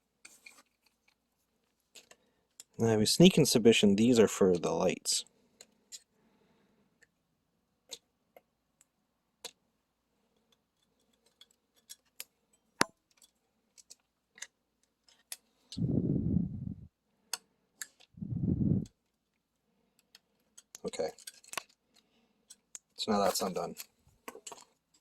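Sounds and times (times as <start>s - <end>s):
dull low bumps: 15.8s - 16.9s, 18.2s - 18.9s
small clicks of tools: 20.0s - 23.0s.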